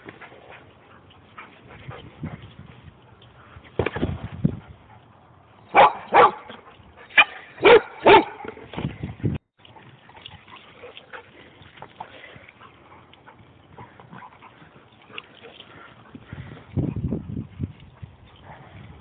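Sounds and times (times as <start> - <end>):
dog barking: 5.7 - 6.5, 7.2 - 8.5.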